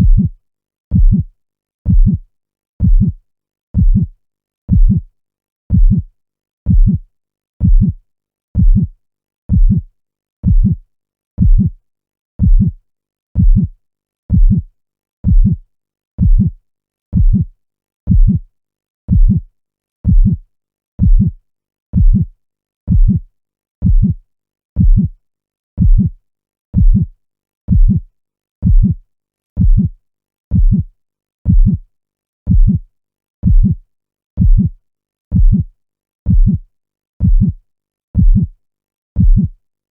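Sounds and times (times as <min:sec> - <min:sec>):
heartbeat thumps: 0:00.0 - 0:00.3, 0:00.9 - 0:01.3, 0:01.9 - 0:02.2, 0:02.8 - 0:03.2, 0:03.8 - 0:04.1, 0:04.7 - 0:05.0, 0:05.7 - 0:06.0, 0:06.7 - 0:07.0, 0:07.6 - 0:08.0, 0:08.6 - 0:08.9, 0:09.5 - 0:09.8, 0:10.4 - 0:10.8, 0:11.4 - 0:11.7, 0:12.4 - 0:12.8, 0:13.4 - 0:13.7, 0:14.3 - 0:14.6, 0:15.2 - 0:15.6, 0:16.2 - 0:16.5, 0:17.2 - 0:17.5, 0:18.1 - 0:18.4, 0:19.1 - 0:19.4, 0:20.1 - 0:20.4, 0:21.0 - 0:21.4, 0:22.0 - 0:22.3, 0:22.9 - 0:23.2, 0:23.8 - 0:24.2, 0:24.8 - 0:25.1, 0:25.8 - 0:26.1, 0:26.8 - 0:27.1, 0:27.7 - 0:28.0, 0:28.6 - 0:29.0, 0:29.6 - 0:29.9, 0:30.5 - 0:30.9, 0:31.5 - 0:31.8, 0:32.5 - 0:32.8, 0:33.4 - 0:33.8, 0:34.4 - 0:34.7, 0:35.3 - 0:35.7, 0:36.3 - 0:36.6, 0:37.2 - 0:37.6, 0:38.2 - 0:38.5, 0:39.2 - 0:39.5.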